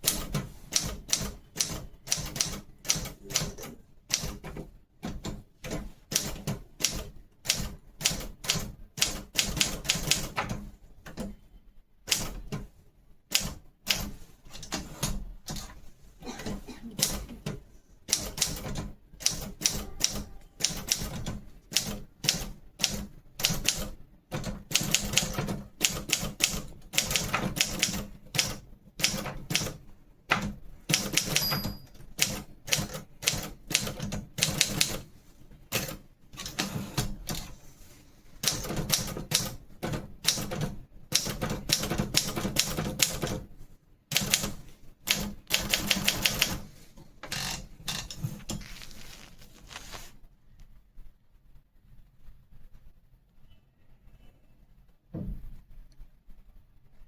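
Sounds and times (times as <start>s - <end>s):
manual typewriter typing: 0.0s - 11.4s, 12.1s - 15.8s, 16.4s - 37.6s, 38.4s - 43.5s, 44.1s - 49.9s
typewriter bell ring: 31.2s - 32.1s.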